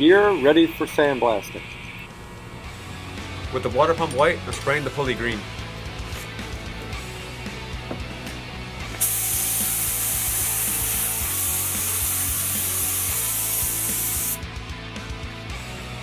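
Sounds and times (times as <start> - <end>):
spray paint hissing: 8.9 - 14.4.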